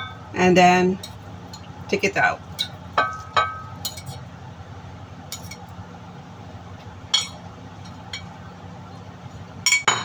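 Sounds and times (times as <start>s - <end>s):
utensil clinking against pan: 2.5s - 4.2s, 5.3s - 5.7s, 7.1s - 8.4s.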